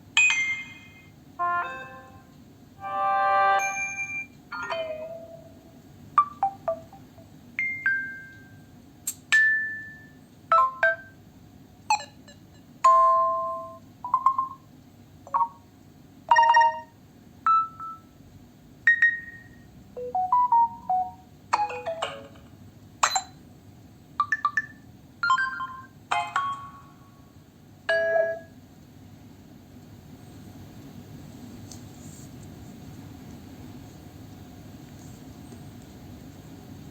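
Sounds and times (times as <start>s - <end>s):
phone alert tones: 0.2s - 2.2s, 2.8s - 5.4s, 6.2s - 8.2s, 18.9s - 22.2s.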